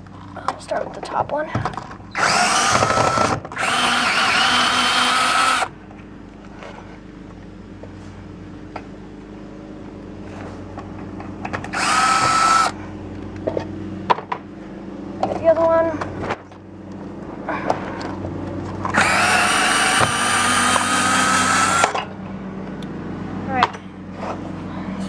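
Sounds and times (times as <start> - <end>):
drill motor whine: 2.1 - 5.7, 11.6 - 12.8, 18.9 - 22.1.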